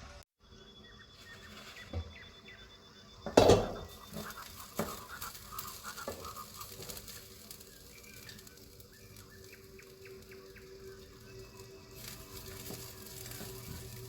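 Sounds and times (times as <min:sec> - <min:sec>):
cookware knocking and clinking: 0:03.3 - 0:04.0.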